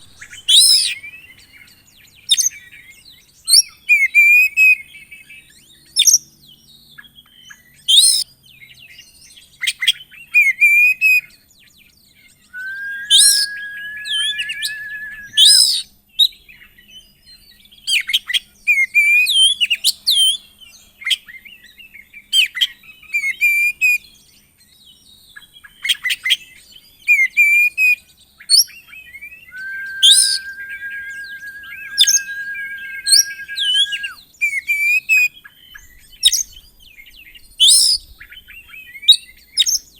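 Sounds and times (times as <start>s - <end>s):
long level bird whistle: 12.5s - 15.8s, 29.3s - 34.2s
magpie-robin singing chirps: 12.6s - 15.8s, 29.6s - 34.1s.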